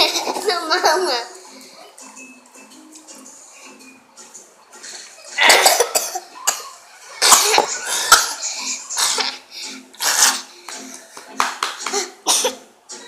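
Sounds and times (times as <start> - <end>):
person coughing hard: 5.4 - 6.6, 7.2 - 8.4, 12.0 - 12.6.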